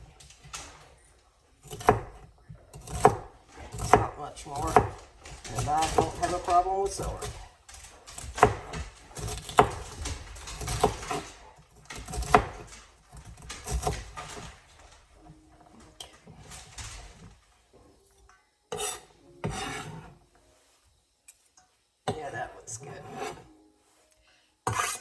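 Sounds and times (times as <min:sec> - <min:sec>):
knife scraping on cutting board: 0:01.6 - 0:14.8, 0:18.7 - 0:20.7, 0:22.2 - 0:25.0.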